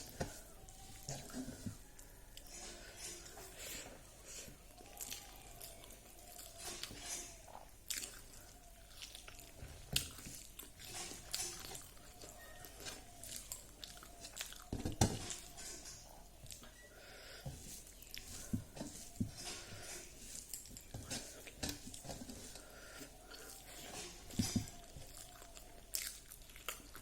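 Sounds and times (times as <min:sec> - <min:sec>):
person chewing and crunching: 0:00.0 - 0:27.0.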